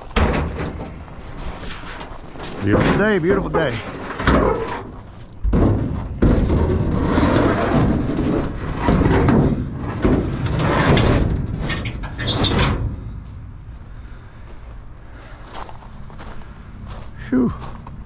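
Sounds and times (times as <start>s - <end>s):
metal knocks: 0.0s - 1.3s, 2.6s - 6.9s
scrap metal scraping and rattling: 0.0s - 16.9s.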